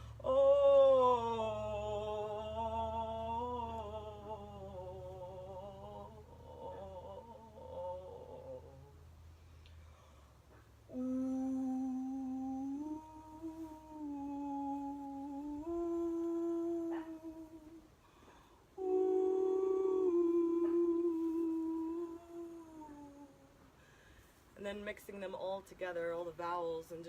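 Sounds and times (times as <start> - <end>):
woman humming long tones: 0.0 - 9.3, 10.8 - 23.9.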